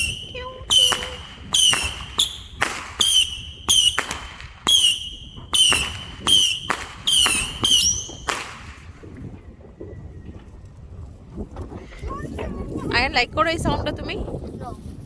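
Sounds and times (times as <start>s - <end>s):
fireworks whistling bangs: 0.0s - 9.1s.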